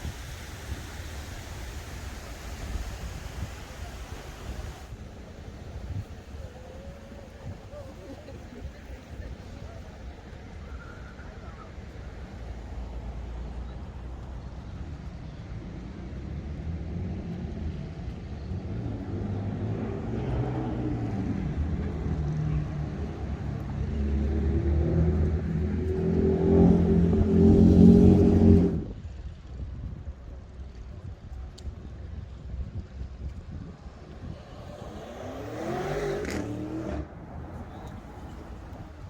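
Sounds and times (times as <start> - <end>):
car engine revving: 23.9 - 28.9, 34.3 - 38.3.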